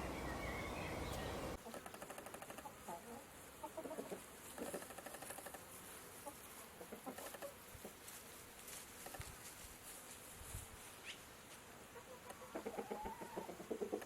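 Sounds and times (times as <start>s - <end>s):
crackly background hiss: 0.0s - 14.0s
fowl clucking: 1.1s - 4.9s, 6.2s - 8.0s, 12.0s - 14.0s.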